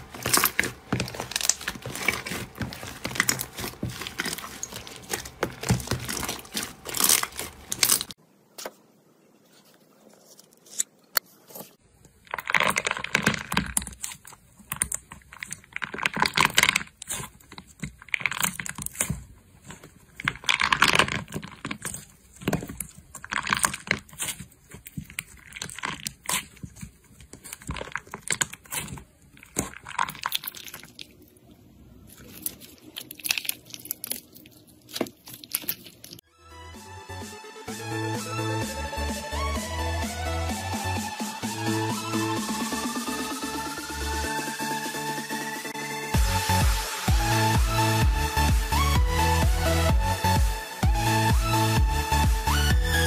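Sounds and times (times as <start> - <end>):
slime crackling and squishing: 0.0 - 8.2, 12.0 - 36.2.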